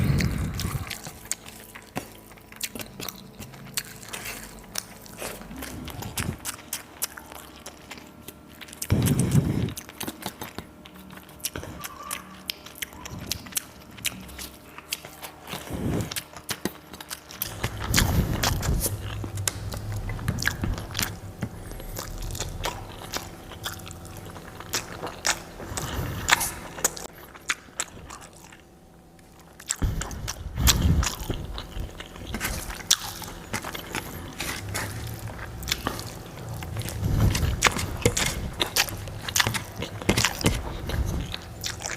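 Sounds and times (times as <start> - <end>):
person chewing crunchy food: 0.0 - 41.9.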